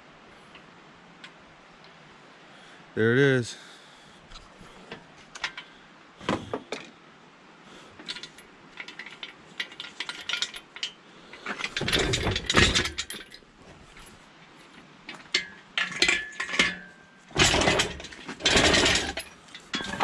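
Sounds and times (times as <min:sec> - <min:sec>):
loud rattling clatters: 0:08.0 - 0:13.4, 0:15.1 - 0:20.0
metal tools clinking: 0:08.0 - 0:14.2, 0:15.1 - 0:20.0.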